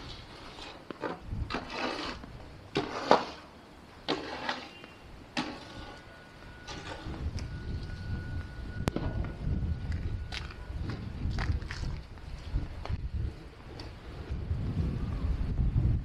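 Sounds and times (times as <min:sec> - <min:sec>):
faint steady high tone: 0:04.6 - 0:10.8.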